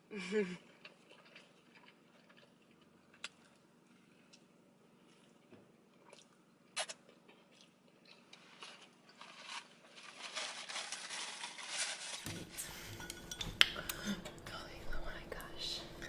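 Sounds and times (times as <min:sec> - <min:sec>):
person biting and chewing food: 0:06.0 - 0:10.1.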